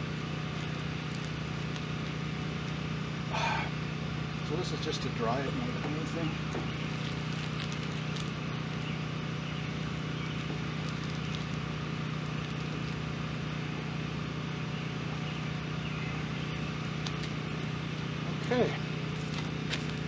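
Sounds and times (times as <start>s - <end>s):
small electric motor whirring: 5.2s - 14.4s, 16.2s - 20.0s.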